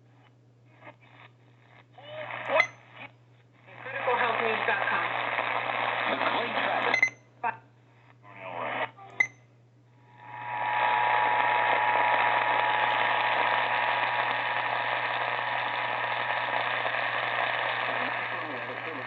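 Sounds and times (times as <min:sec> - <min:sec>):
radio static: 0:02.0 - 0:07.1, 0:10.2 - 0:19.0.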